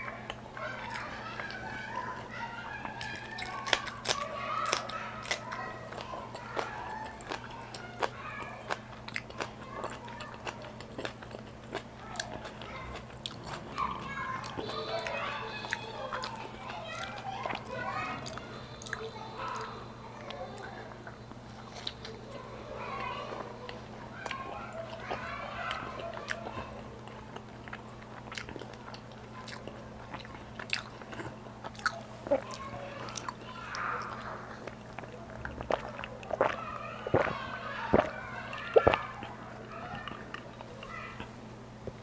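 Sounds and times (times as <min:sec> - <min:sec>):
faint steady hum: 0:00.0 - 0:42.0
person chewing food: 0:00.0 - 0:42.0.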